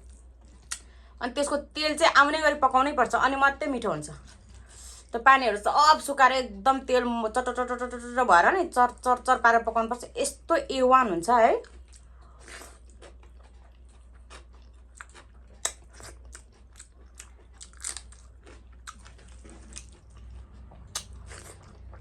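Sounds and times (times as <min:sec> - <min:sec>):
chewing crunchy food: 0:00.0 - 0:00.9, 0:11.6 - 0:22.0.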